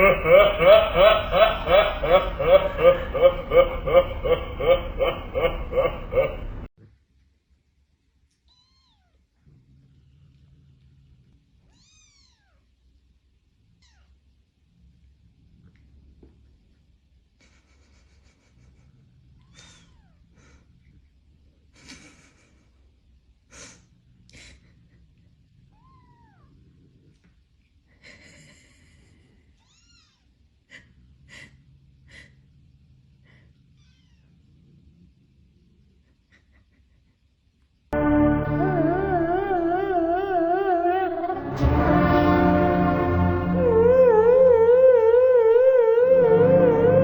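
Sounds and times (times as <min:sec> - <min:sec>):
short sharp sounds: 0:38.0 - 0:47.0.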